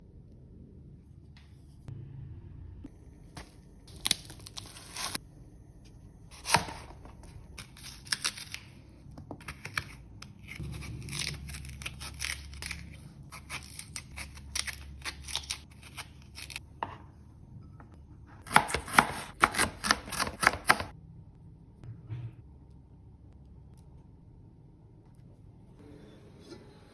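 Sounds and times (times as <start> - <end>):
knife chopping on cutting board: 18.4 - 20.9.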